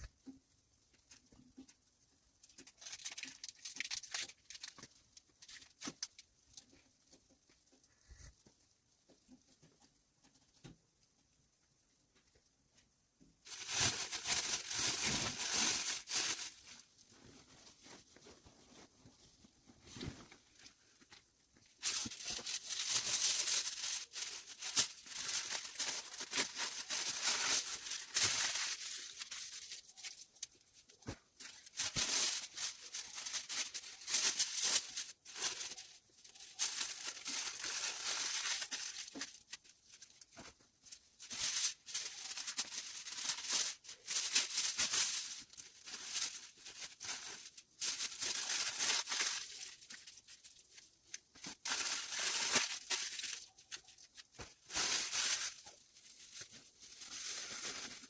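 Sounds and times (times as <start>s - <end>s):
rustling and crinkling: 0.0s - 58.0s.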